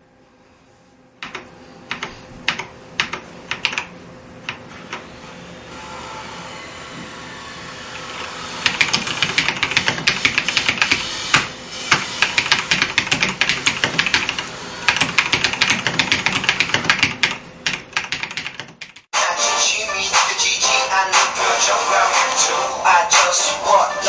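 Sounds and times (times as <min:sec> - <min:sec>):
fast typing on mechanical keyboard: 0:01.2 - 0:03.9, 0:08.6 - 0:11.1, 0:11.9 - 0:19.1.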